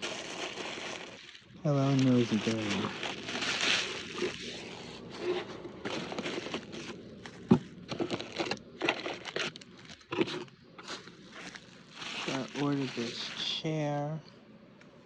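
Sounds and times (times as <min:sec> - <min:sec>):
packaging rustling and crinkling: 0:00.0 - 0:13.6.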